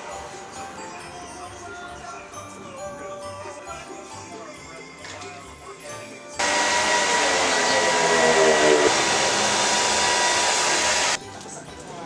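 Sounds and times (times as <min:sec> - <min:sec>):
small electric motor whining: 0:06.4 - 0:11.2.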